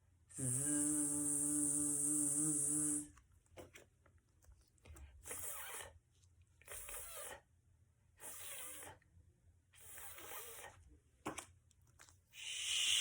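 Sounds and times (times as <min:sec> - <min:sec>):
woman making hissing speech sound: 0:00.4 - 0:03.1, 0:12.4 - 0:13.0.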